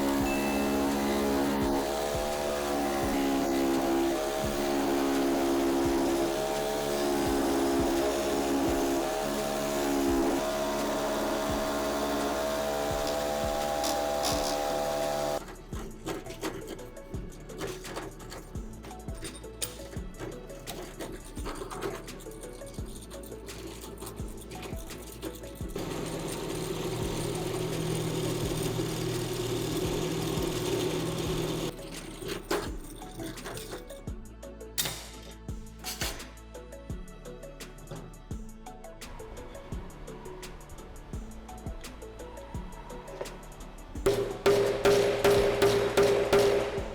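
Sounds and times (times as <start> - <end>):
power tool motor whining: 0.0 - 32.3.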